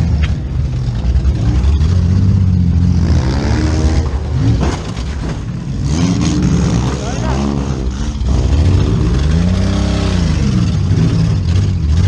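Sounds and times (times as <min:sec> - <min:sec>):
car engine revving: 0:00.0 - 0:12.0.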